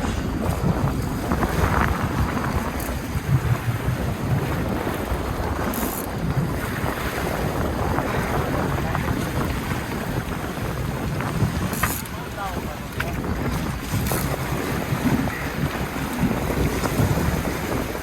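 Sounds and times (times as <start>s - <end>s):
low engine rumble: 0.0s - 5.3s
water rushing: 0.0s - 18.0s
wind buffeting microphone: 0.0s - 18.0s.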